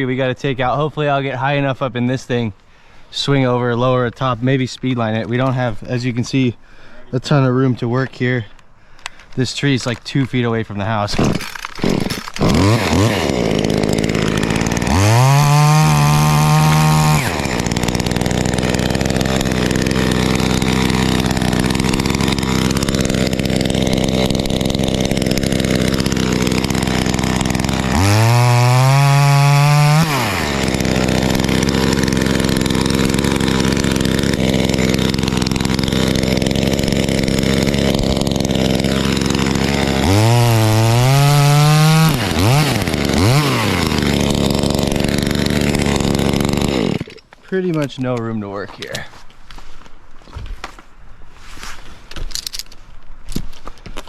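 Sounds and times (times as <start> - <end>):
chainsaw idling and revving: 11.1 - 49.1.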